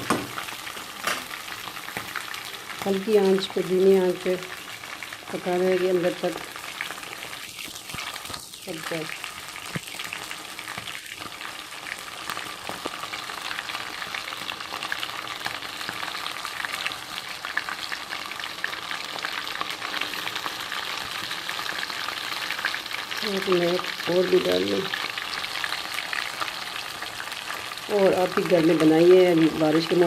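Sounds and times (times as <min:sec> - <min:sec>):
chicken sizzling in hot oil: 0:00.0 - 0:30.0
oil popping: 0:07.4 - 0:11.4.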